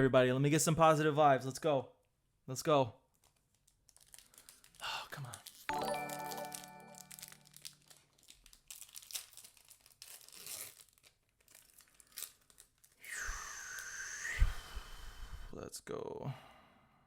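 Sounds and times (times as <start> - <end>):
foil wrapper tearing and crinkling: 3.2 - 5.7, 7.0 - 13.0.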